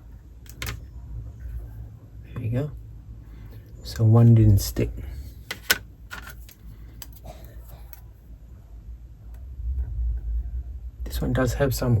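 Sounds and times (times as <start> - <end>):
low rumble of handling: 0.0 - 12.0.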